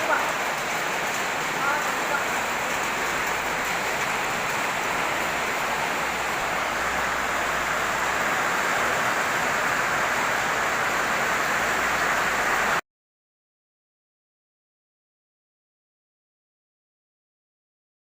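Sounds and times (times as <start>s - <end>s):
heavy rain in wind: 0.0s - 12.8s.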